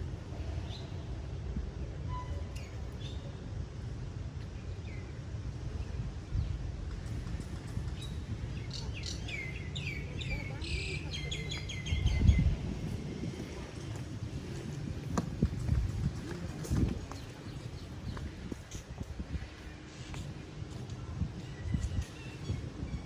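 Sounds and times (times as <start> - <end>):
low outdoor rumble: 0.0 - 23.0
birds chirping: 7.9 - 13.0, 16.6 - 18.8.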